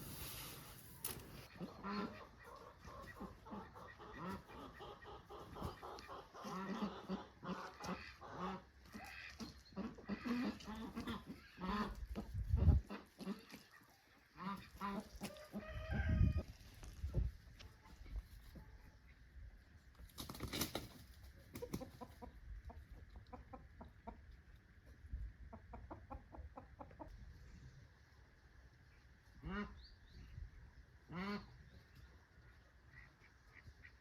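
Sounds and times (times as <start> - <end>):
chickens clucking: 0.3 - 16.4, 17.1 - 29.8.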